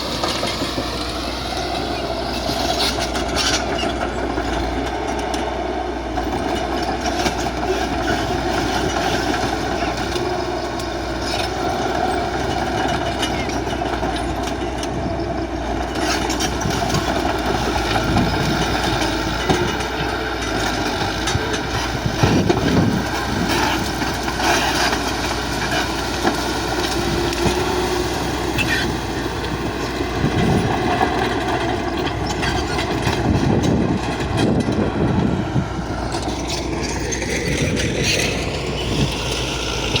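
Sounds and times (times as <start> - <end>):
bulldozer diesel engine running: 0.0 - 40.0.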